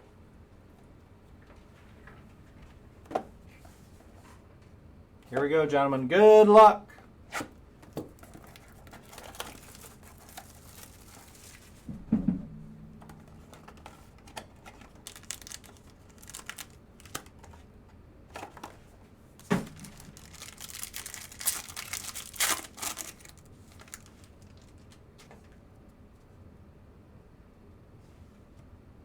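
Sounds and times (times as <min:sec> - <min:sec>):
wrappers crinkling and tearing: 0:08.2 - 0:11.8, 0:13.6 - 0:17.6, 0:19.4 - 0:25.0
loud knocks: 0:11.9 - 0:13.8.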